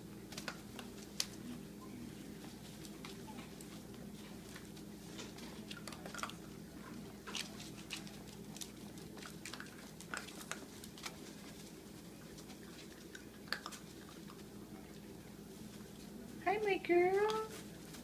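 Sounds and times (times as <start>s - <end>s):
chewing and crunching food: 0.2s - 16.4s.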